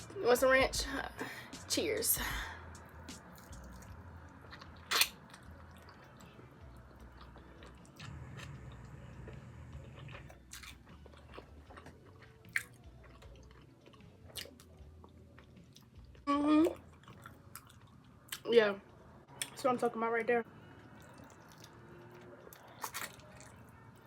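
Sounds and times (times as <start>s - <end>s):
chewing and biting: 3.1s - 16.2s, 16.8s - 18.4s, 20.8s - 23.8s.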